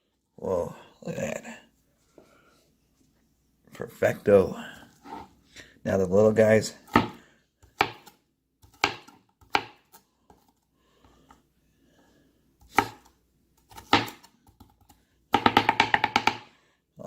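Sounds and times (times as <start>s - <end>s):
knife chopping onion: 6.8s - 10.5s, 12.6s - 16.5s.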